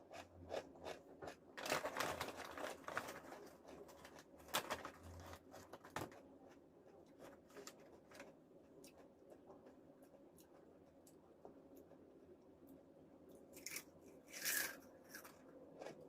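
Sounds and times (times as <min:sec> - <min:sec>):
chips crunching: 0:13.6 - 0:16.0.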